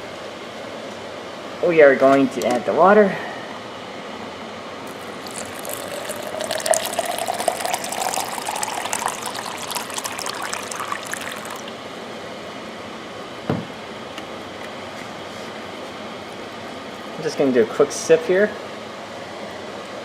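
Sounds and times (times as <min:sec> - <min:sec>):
water pouring into a cup: 0:04.9 - 0:11.8.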